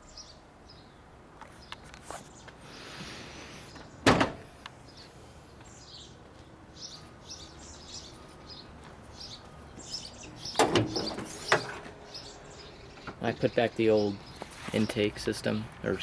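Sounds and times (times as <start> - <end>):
faint birdsong: 0.0 - 16.0
car door shutting: 4.0 - 4.5, 10.5 - 12.0
knocks and clunks: 4.0 - 4.5, 10.5 - 12.0.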